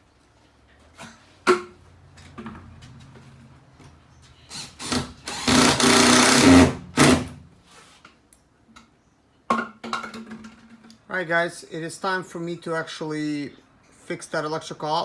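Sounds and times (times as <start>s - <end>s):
power drill motor humming: 4.5s - 7.1s
harsh cutting noise: 4.5s - 7.3s.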